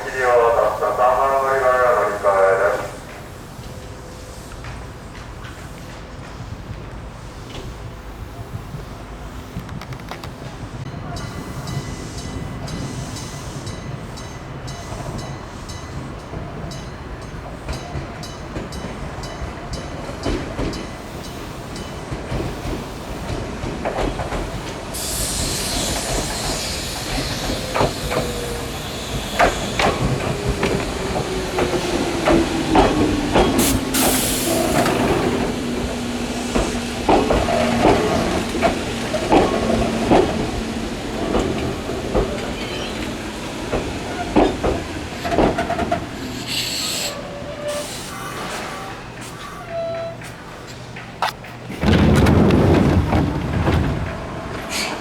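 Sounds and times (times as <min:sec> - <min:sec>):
train rolling with a hiss: 0:00.0 - 0:55.0
train wheels clacking over rail joints: 0:17.3 - 0:47.1, 0:49.2 - 0:55.0.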